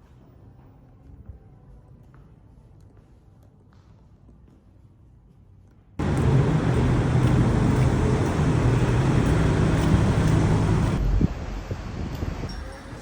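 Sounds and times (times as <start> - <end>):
engine running steadily: 6.0 - 11.7.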